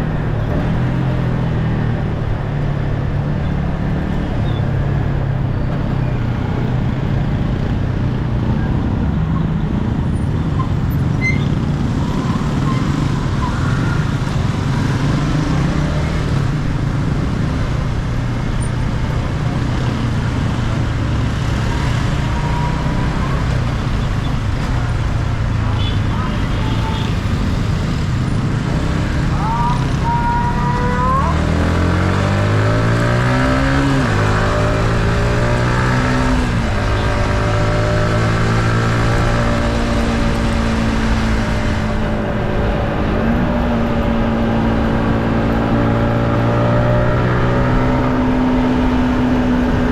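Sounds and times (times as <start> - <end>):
road noise: 0.0 - 49.9
motorcycle engine running: 5.9 - 33.2.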